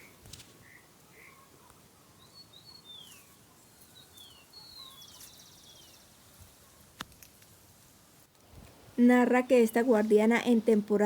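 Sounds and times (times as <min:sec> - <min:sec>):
background hiss: 0:00.0 - 0:11.0
bird trill: 0:02.2 - 0:06.0
birds whistling: 0:02.2 - 0:06.0.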